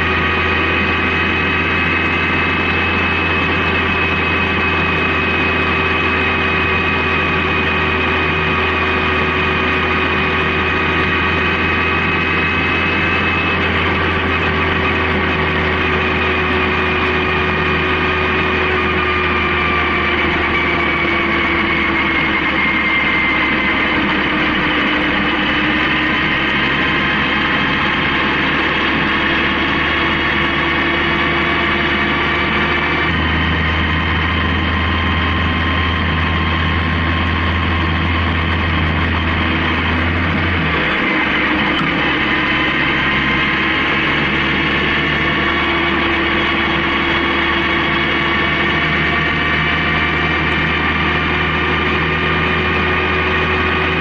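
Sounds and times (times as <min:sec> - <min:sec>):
motorcycle engine cruising: 0:00.0 - 0:54.0.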